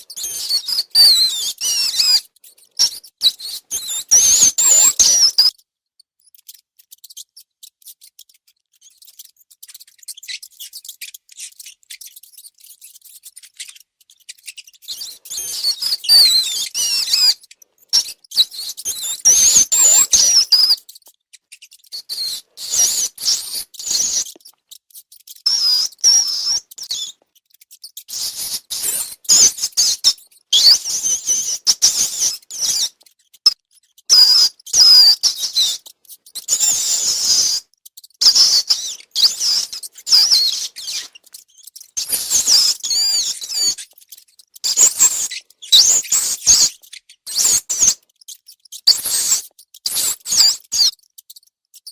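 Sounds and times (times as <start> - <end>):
rats squeaking: 0.0 - 51.9.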